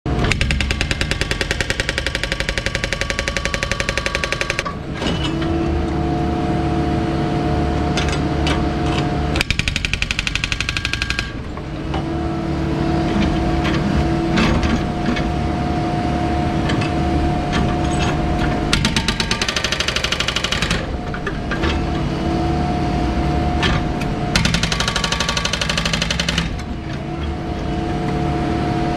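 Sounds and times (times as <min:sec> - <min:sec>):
excavator engine whine: 0:00.1 - 0:28.9
hydraulic breaker hammering: 0:00.2 - 0:05.5, 0:18.7 - 0:21.0, 0:23.6 - 0:26.8.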